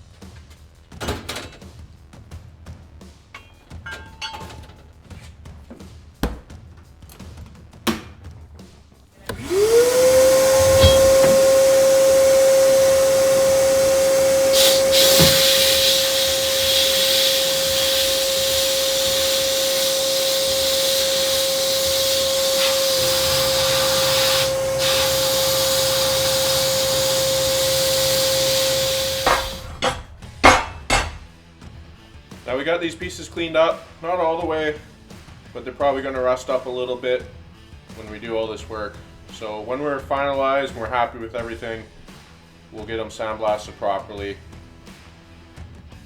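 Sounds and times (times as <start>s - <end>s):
power tool whining: 9.2s - 30.6s.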